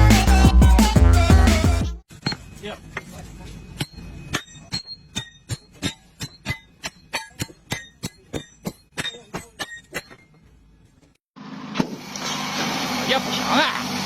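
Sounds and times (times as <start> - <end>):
sharp glassy clinks: 2.2 - 10.5.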